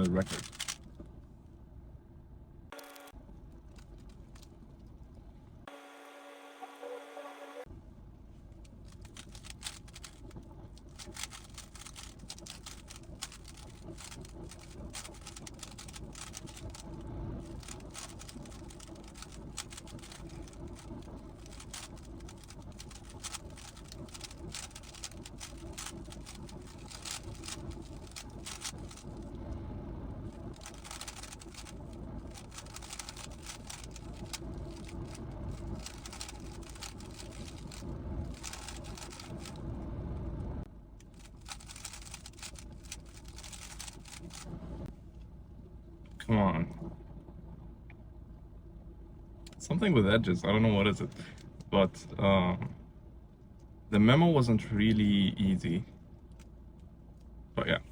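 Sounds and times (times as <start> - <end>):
puzzle cube plastic clicks: 0.2 - 0.8, 8.9 - 10.3, 11.0 - 16.8, 17.5 - 29.1, 30.6 - 39.6, 41.1 - 44.5.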